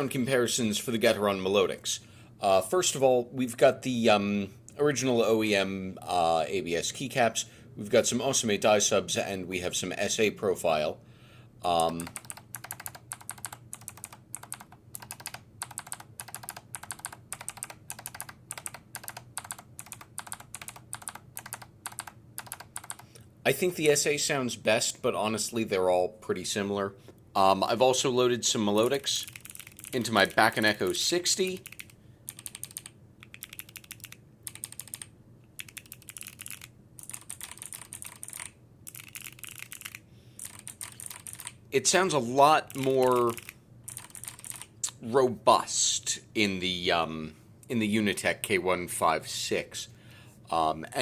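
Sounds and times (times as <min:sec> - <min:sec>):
mechanical keyboard typing: 0:11.8 - 0:23.1, 0:28.8 - 0:41.6, 0:42.6 - 0:44.7
mechanical keyboard key clicks: 0:31.6 - 0:41.5, 0:42.7 - 0:44.7.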